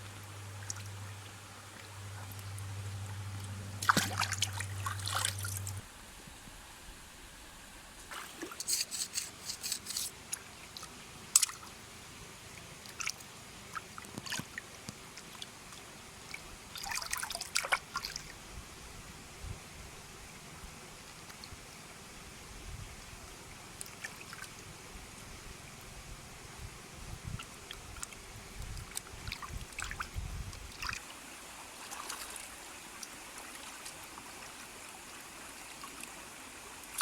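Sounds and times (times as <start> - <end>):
water trickling and splashing: 0.4 - 2.8, 3.4 - 5.8, 8.1 - 11.8, 12.4 - 18.4, 23.8 - 25.3, 27.2 - 37.0.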